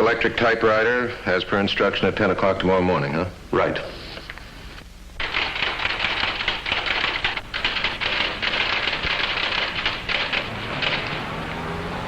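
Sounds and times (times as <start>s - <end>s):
electric typewriter typing: 5.2s - 11.6s.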